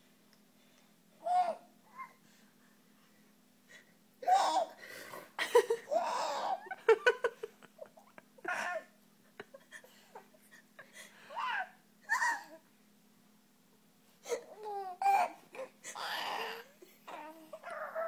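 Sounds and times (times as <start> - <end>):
baby laughing: 5.9 - 6.7.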